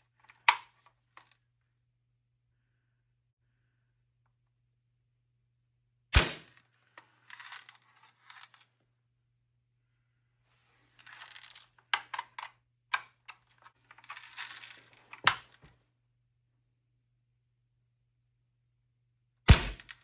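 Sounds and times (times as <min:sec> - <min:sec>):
bb gun shot crack: 0:06.2 - 0:06.5, 0:19.5 - 0:19.9.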